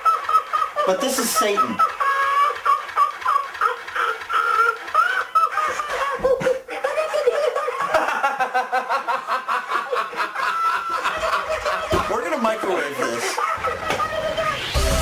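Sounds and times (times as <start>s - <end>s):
toy voice giggling: 0.0s - 8.2s, 13.0s - 14.7s.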